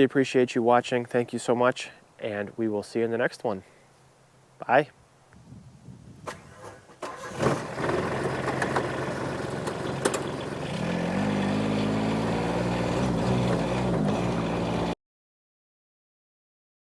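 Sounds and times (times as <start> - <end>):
vehicle engine starting and running: 6.2 - 15.0.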